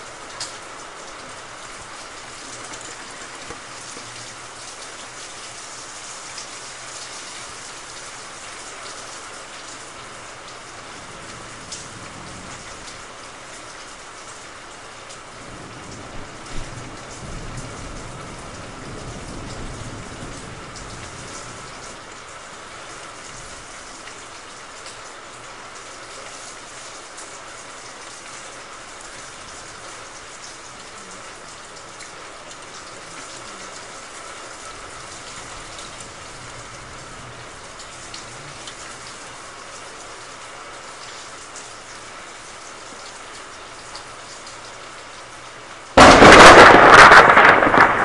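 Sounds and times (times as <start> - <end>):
heavy rain falling: 0.0 - 48.0
thunder rumbling: 46.0 - 48.0.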